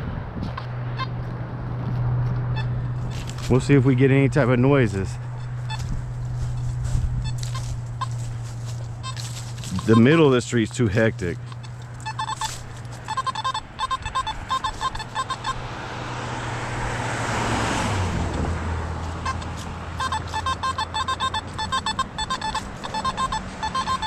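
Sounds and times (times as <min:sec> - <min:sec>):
metal detector beeping rapidly: 0:02.6 - 0:15.7, 0:19.0 - 0:24.0
car passing: 0:11.1 - 0:24.0.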